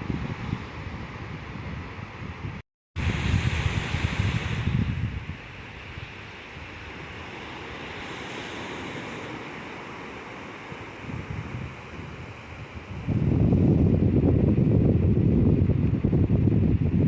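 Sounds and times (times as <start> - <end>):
wind buffeting on microphone: 0.0 - 8.1, 11.0 - 17.0
sea surf washing: 3.0 - 15.8.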